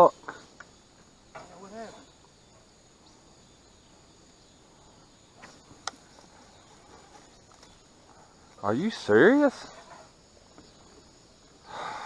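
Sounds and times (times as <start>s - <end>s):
crickets chirring: 0.0s - 12.0s.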